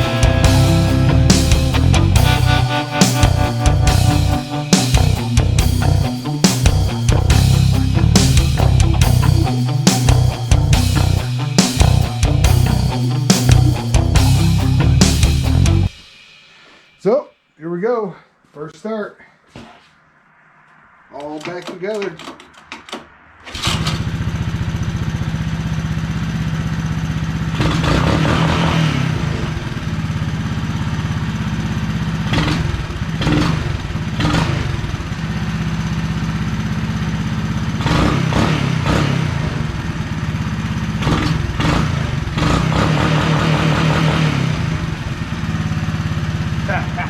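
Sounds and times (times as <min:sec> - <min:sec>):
engine throttle blips: 0:00.0 - 0:15.9, 0:22.4 - 0:47.0
engine starting and idling: 0:21.5 - 0:47.0.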